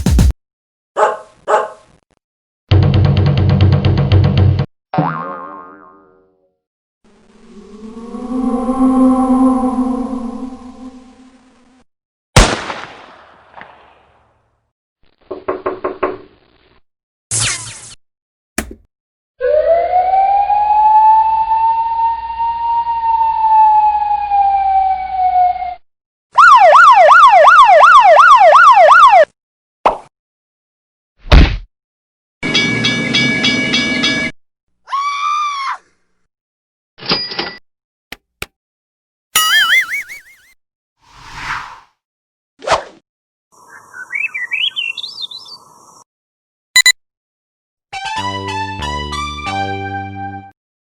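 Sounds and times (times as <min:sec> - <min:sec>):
siren wail rising and falling: 0:07.1 - 0:11.4, 0:19.4 - 0:25.8, 0:26.4 - 0:29.3
electronic yelp siren: 0:07.4 - 0:11.3, 0:19.4 - 0:29.3
warbling whistle rising in pitch: 0:07.4 - 0:11.3
sharp swish: 0:41.1 - 0:42.0.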